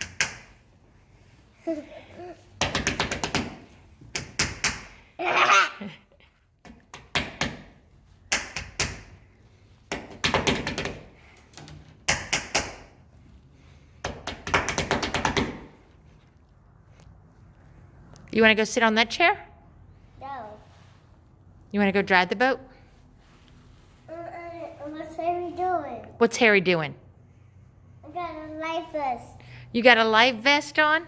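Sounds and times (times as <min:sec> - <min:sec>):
rapid tapping and knocking: 0:02.6 - 0:04.9, 0:09.9 - 0:12.9, 0:14.0 - 0:15.8
toddler vocal sounds: 0:05.2 - 0:05.9.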